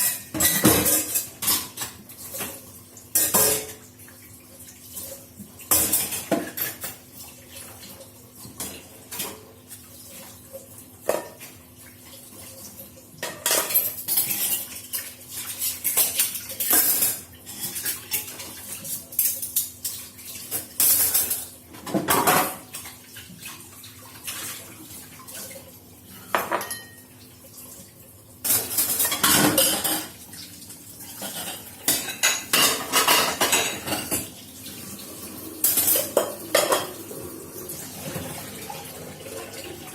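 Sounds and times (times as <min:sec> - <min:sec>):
dishes and cutlery clattering: 0:00.0 - 0:03.9, 0:05.6 - 0:07.0, 0:08.4 - 0:09.5, 0:11.0 - 0:11.6, 0:13.2 - 0:22.9, 0:26.1 - 0:27.1, 0:28.4 - 0:30.2, 0:31.0 - 0:37.2.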